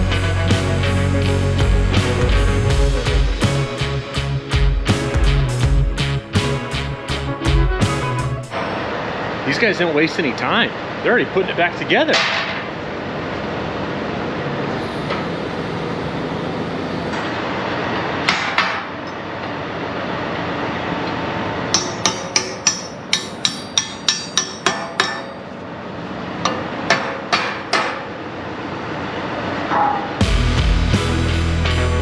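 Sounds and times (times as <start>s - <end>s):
steady background noise: 0.0s - 32.0s
hammer ringing on steel: 21.8s - 25.4s.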